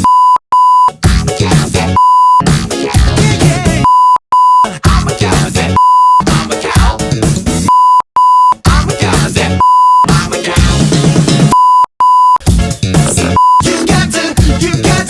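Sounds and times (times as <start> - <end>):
censor bleeps: 0.0 - 0.9, 2.0 - 2.4, 3.8 - 4.7, 5.8 - 6.2, 7.7 - 8.6, 9.6 - 10.1, 11.5 - 12.4, 13.4 - 13.6
upbeat pop song with vocals: 1.3 - 4.0, 4.6 - 7.4, 8.6 - 11.6, 12.9 - 15.0.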